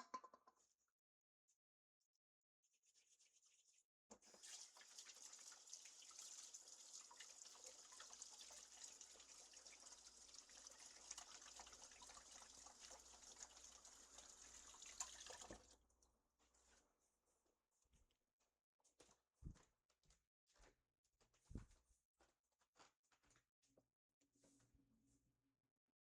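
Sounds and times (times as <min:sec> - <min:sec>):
tap water running into sink: 0:04.2 - 0:15.8.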